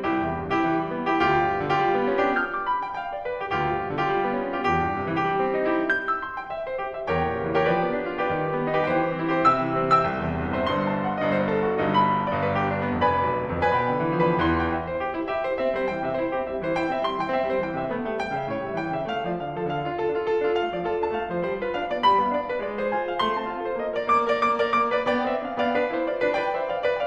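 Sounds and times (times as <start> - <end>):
piano music: 0.0 - 27.0.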